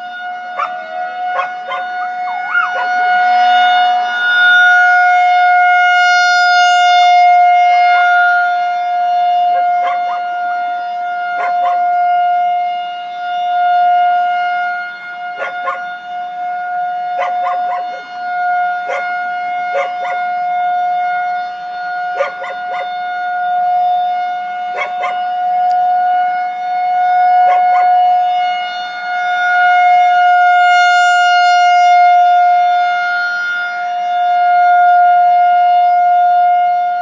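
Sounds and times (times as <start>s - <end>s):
warning siren steady tone: 0.0s - 37.0s
dogs barking: 0.5s - 3.0s, 9.5s - 10.2s, 11.4s - 11.9s, 15.4s - 15.9s, 17.1s - 18.1s, 18.8s - 20.3s, 22.2s - 22.9s, 24.7s - 25.3s, 27.4s - 28.0s.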